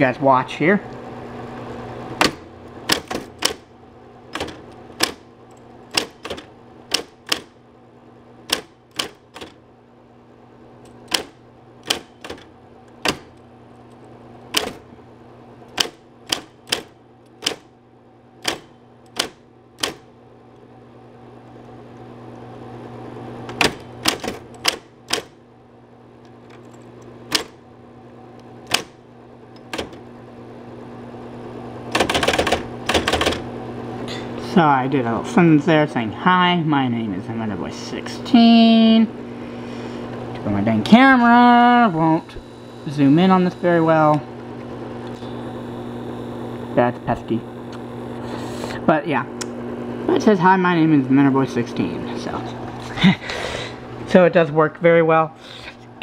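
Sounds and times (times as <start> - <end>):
typewriter motor hum: 1.5 - 7.6, 8.4 - 9.6, 10.8 - 20.7, 23.3 - 25.4, 26.2 - 27.7, 28.3 - 30.4, 31.8 - 33.6, 39.6 - 48.8
typewriter key strikes: 5.9 - 7.5, 18.4 - 20.0, 31.9 - 33.4.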